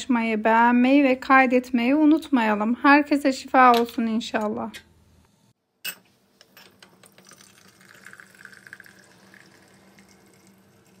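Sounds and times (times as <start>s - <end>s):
liquid being poured: 6.8s - 11.0s.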